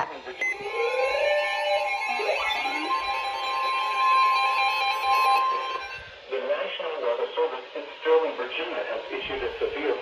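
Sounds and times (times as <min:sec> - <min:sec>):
steady electronic alert tone: 0:00.0 - 0:06.2.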